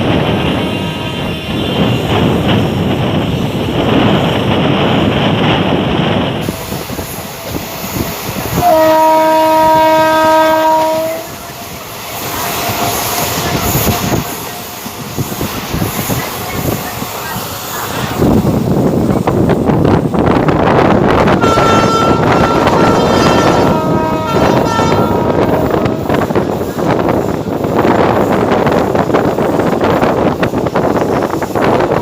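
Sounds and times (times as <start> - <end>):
carriages clattering on rails: 0.0 - 32.0
train rushing noise: 0.0 - 32.0
locomotive horn blast: 8.5 - 12.0, 21.3 - 26.4.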